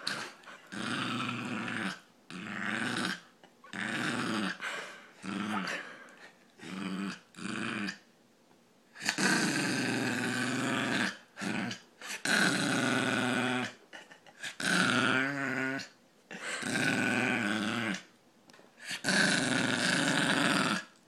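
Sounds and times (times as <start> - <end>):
dog making vocal noises: 4.5 - 6.4.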